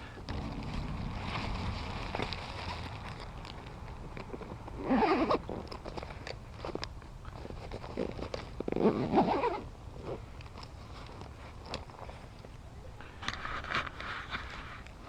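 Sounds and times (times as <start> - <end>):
rustling and crunching handling: 0.0 - 15.0.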